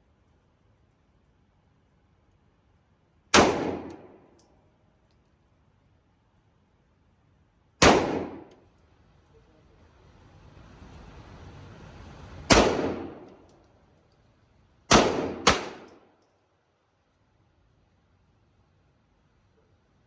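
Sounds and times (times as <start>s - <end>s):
pistol shots with ringing echo: 3.3s - 4.4s, 7.8s - 8.6s, 12.5s - 13.4s, 14.9s - 16.1s.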